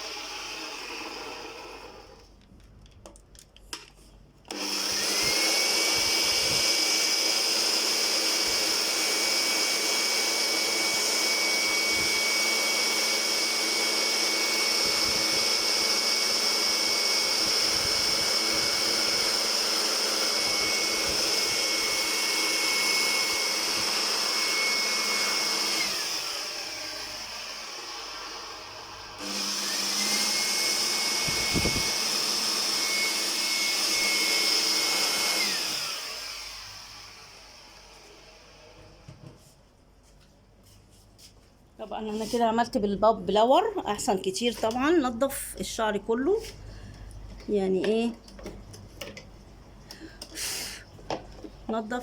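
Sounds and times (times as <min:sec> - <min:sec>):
electric air blower whining: 0:00.0 - 0:02.3, 0:04.5 - 0:39.2, 0:50.0 - 0:50.9.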